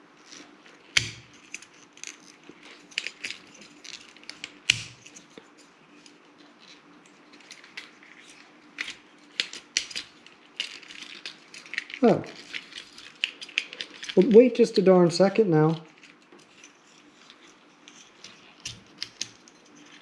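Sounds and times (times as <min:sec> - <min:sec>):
plastic toy parts clicking: 0:08.8 - 0:14.3.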